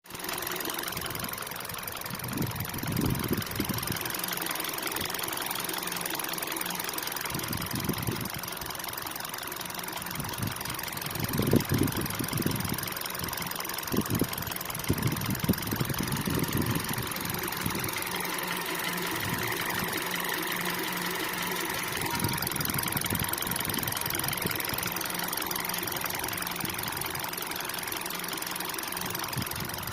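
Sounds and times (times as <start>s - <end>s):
car engine idling with tapping: 0.1s - 29.9s
engine knocks: 0.2s - 29.9s.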